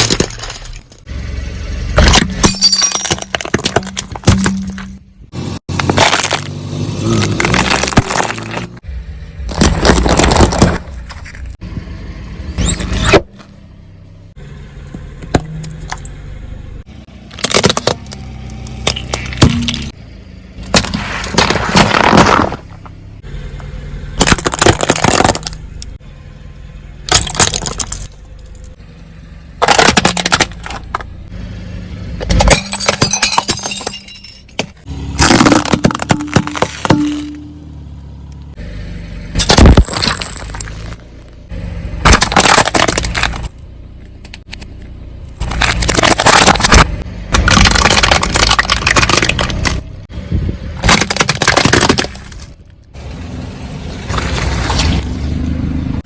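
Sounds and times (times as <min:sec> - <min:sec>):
tyres crushing objects: 0:00.0 - 0:01.1, 0:02.0 - 0:05.0, 0:05.7 - 0:08.8, 0:09.4 - 0:11.6, 0:17.3 - 0:20.0, 0:20.6 - 0:23.0, 0:24.2 - 0:25.6, 0:27.1 - 0:28.2, 0:29.6 - 0:31.2, 0:32.2 - 0:37.6, 0:39.4 - 0:41.0, 0:42.0 - 0:43.6, 0:45.4 - 0:49.9, 0:50.8 - 0:52.7.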